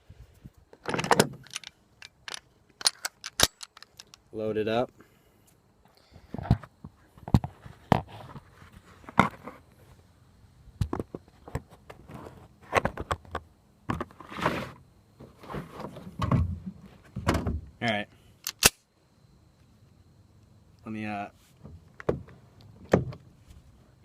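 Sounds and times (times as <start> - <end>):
metallic clicks of pistol handling: 1.1 - 4.2, 18.4 - 18.8.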